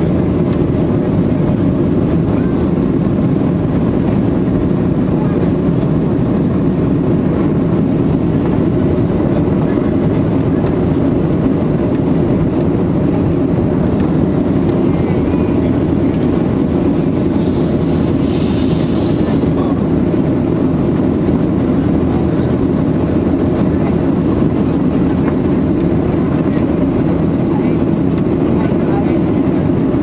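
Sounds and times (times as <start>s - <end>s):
jet engines droning: 0.0s - 30.0s
air rushing past fuselage: 10.8s - 21.8s.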